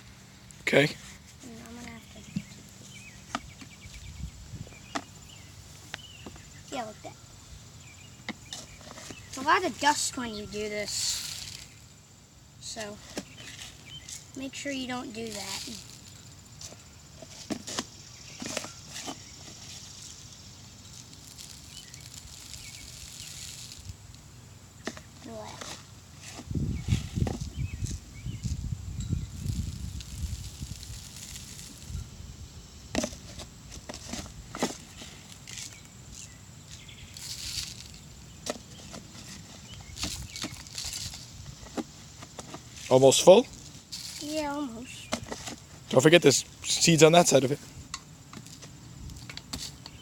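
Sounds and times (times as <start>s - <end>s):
outdoor background noise: 0.0s - 50.0s
birdseed pouring into feeder: 10.8s - 11.8s, 15.2s - 16.4s, 20.8s - 23.9s, 29.4s - 31.9s, 35.3s - 38.1s.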